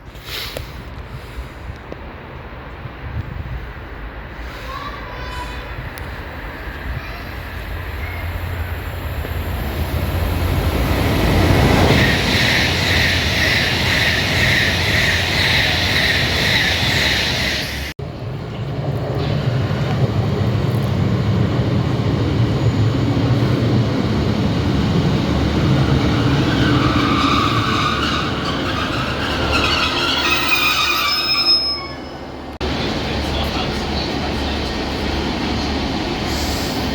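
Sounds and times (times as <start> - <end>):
train rumbling: 0.0 - 36.9
wheels squealing on rails: 4.3 - 17.9, 24.8 - 36.9.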